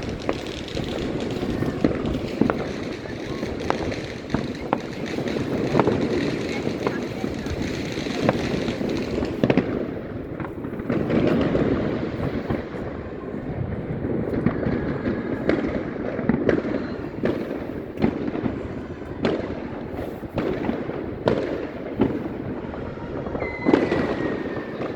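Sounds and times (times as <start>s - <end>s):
close firework bangs: 0.0s - 24.9s
distant fireworks rumble: 0.0s - 24.9s
firework whistle: 22.0s - 24.9s.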